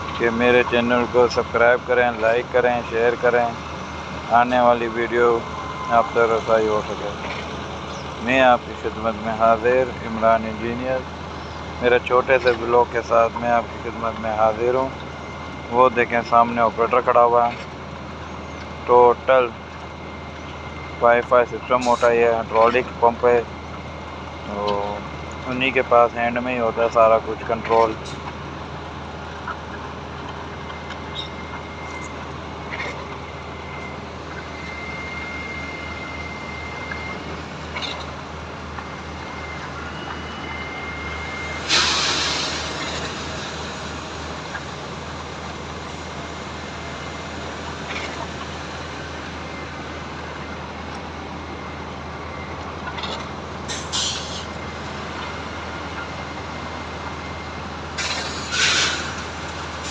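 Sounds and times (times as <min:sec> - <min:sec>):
diesel engine running: 0:00.0 - 0:59.9
air hiss: 0:41.6 - 0:44.0, 0:53.7 - 0:54.6.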